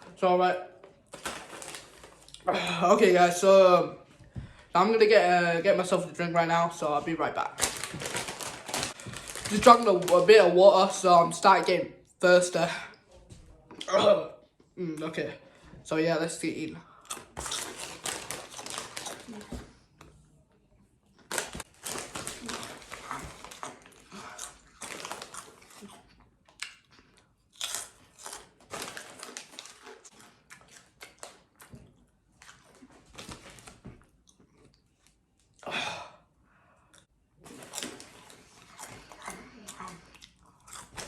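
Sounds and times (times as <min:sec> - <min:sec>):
crunching and chewing snacks: 0:00.9 - 0:02.5, 0:07.6 - 0:10.3, 0:16.9 - 0:20.2, 0:21.1 - 0:35.6, 0:36.9 - 0:41.0.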